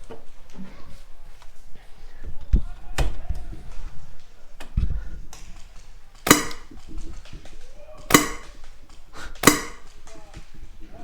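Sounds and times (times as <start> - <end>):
airsoft rifle shots: 6.2 - 7.0, 8.1 - 8.8, 9.4 - 10.2.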